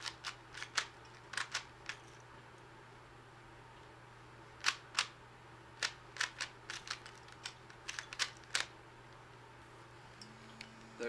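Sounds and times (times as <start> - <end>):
puzzle cube plastic clicks: 0.0 - 2.0, 4.6 - 5.2, 5.8 - 8.7.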